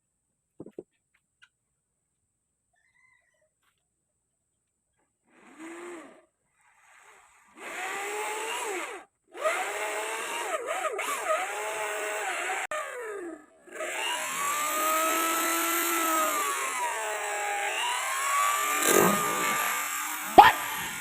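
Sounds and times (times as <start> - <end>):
electric power tool whine: 5.3 - 21.0.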